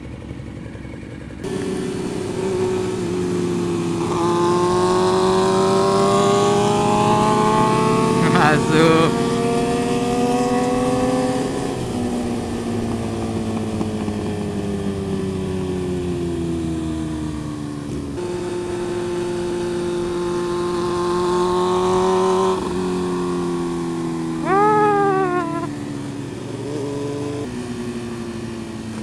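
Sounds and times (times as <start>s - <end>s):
motorcycle engine running: 0.0s - 29.0s.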